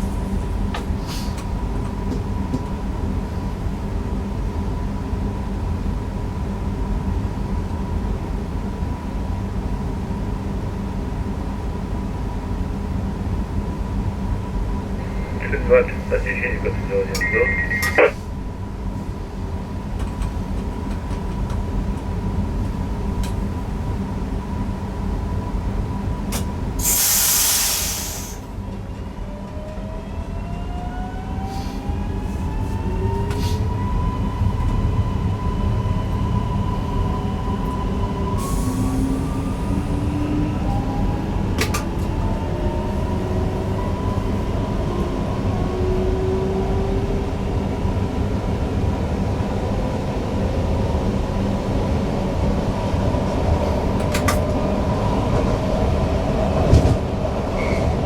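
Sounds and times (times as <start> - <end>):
train rumble: 0.0 - 58.0
loud hiss: 26.8 - 28.4.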